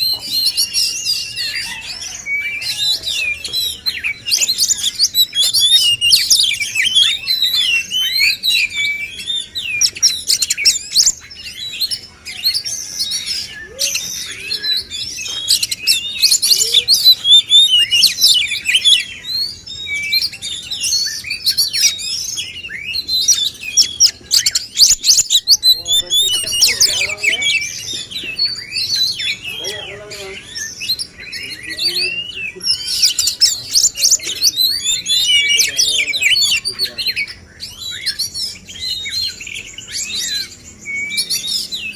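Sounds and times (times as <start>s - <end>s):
bird song chirps and trills: 0.0s - 41.9s.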